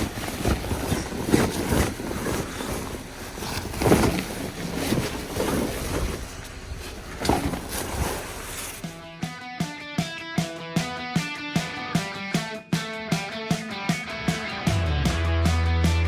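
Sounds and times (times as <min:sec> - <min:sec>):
snow scraping and brushing: 0:00.0 - 0:09.0.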